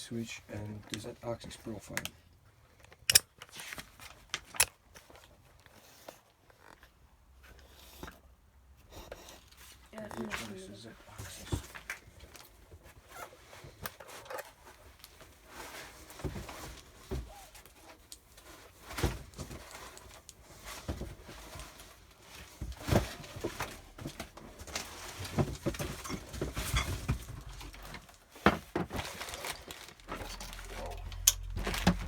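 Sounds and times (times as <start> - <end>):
parts clicking and knocking: 2.8 - 3.5.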